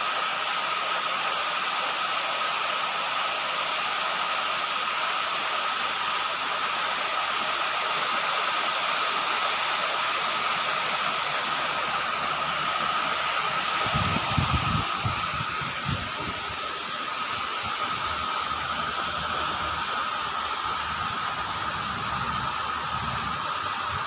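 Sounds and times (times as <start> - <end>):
constant high whine: 0.0 - 24.0
steady hiss: 0.0 - 24.0.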